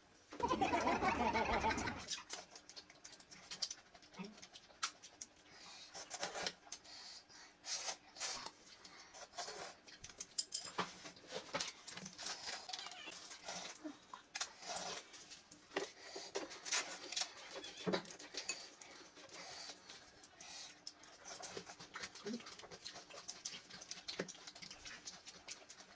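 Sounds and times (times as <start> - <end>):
wet chewing: 1.8 - 6.9, 11.1 - 25.9.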